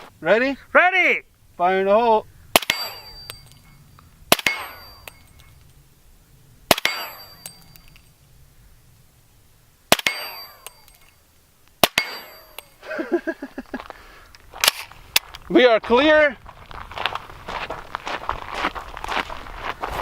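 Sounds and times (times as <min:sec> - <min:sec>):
suppressed pistol shots: 0:02.5 - 0:03.4, 0:04.3 - 0:05.4, 0:06.7 - 0:08.0, 0:09.9 - 0:11.1, 0:11.8 - 0:12.7
bullet ringing steel plate: 0:02.6 - 0:05.6, 0:06.7 - 0:08.2, 0:09.9 - 0:11.2, 0:11.8 - 0:12.8.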